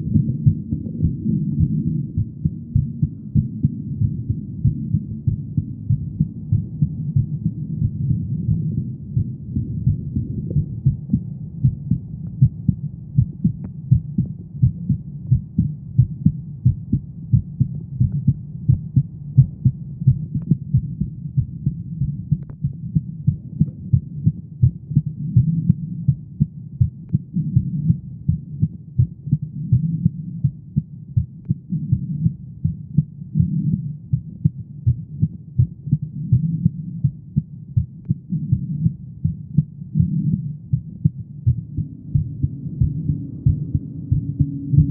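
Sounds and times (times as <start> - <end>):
heartbeat: 0.0 - 44.9.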